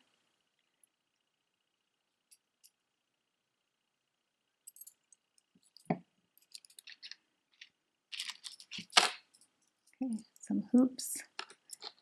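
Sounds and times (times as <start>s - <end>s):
earrings clicking and clinking: 4.7s - 10.5s, 11.2s - 12.0s.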